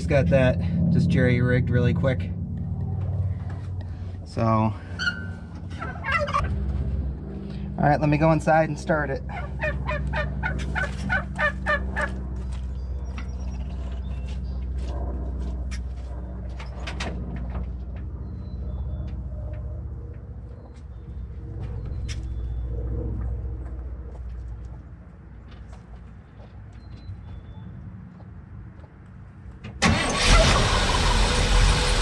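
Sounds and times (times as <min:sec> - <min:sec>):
low mechanical hum: 0:00.0 - 0:32.0
turkey gobbling: 0:05.0 - 0:06.5, 0:09.3 - 0:12.2.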